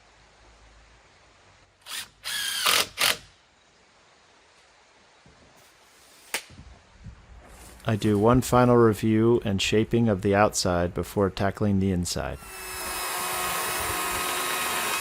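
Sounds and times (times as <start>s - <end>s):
power drill whining: 1.8s - 3.2s, 12.4s - 15.0s.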